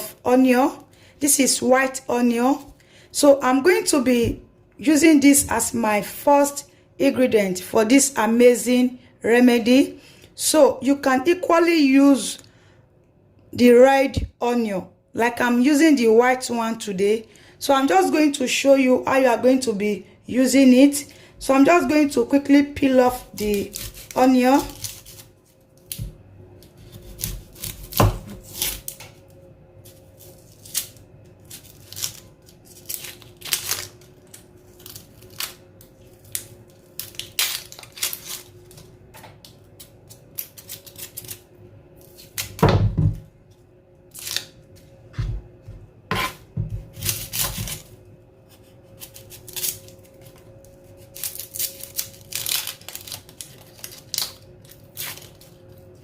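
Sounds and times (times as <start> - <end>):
onion skin crackling and tearing: 23.1 - 42.7, 44.0 - 44.9, 46.8 - 56.0.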